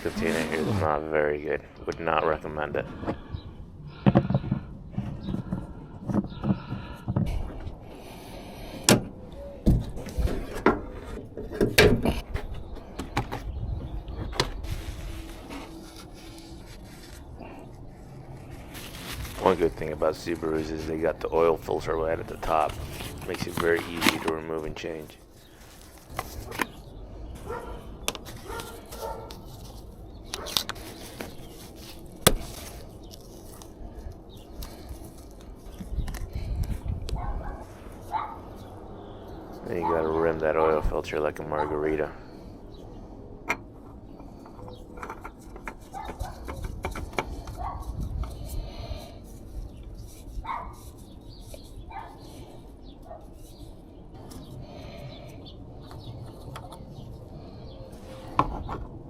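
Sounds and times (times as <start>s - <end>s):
knocks and clunks of objects: 3.9s - 7.7s, 8.8s - 13.6s, 43.4s - 48.4s, 58.2s - 59.0s.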